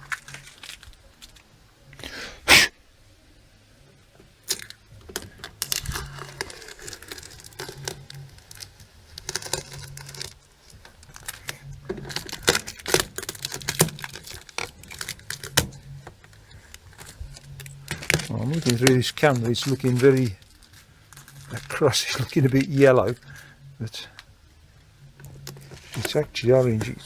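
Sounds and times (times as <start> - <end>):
crinkly material tearing: 0.0 - 1.5, 4.4 - 24.3, 25.2 - 27.0
low hum: 2.7 - 27.0.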